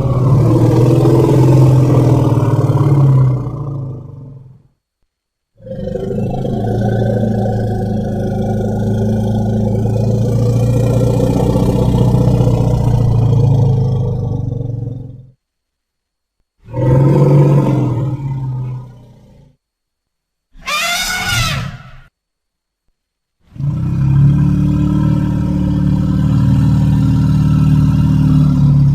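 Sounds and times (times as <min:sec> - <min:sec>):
elephant low roaring call: 0:00.0 - 0:04.6, 0:05.6 - 0:15.4, 0:16.6 - 0:19.6, 0:20.6 - 0:22.1, 0:23.5 - 0:28.9
elephant high-pitched trumpet: 0:20.6 - 0:22.1.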